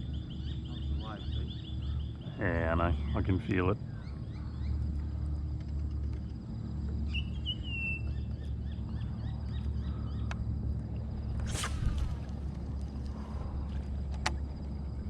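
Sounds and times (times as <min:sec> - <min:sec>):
faint chirping: 0:00.0 - 0:05.4
low rumble: 0:09.2 - 0:15.0.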